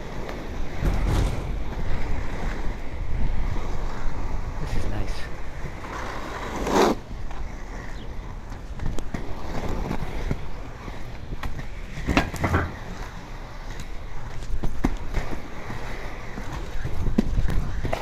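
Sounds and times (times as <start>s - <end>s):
skate knocks: 0.0s - 3.4s, 8.0s - 18.0s
skates rolling over pavement: 0.0s - 18.0s.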